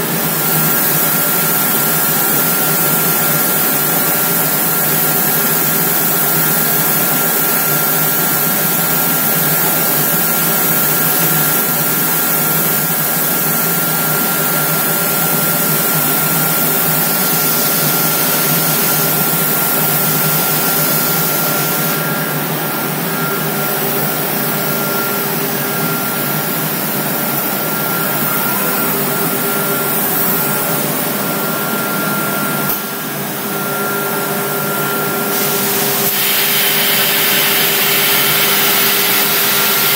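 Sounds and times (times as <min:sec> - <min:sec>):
machining centre whine and hiss: 0:00.0 - 0:39.9.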